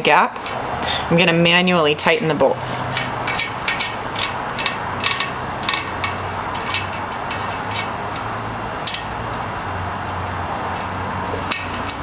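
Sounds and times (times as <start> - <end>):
metal axle nuts clicking: 0.4 - 0.9, 2.8 - 12.0.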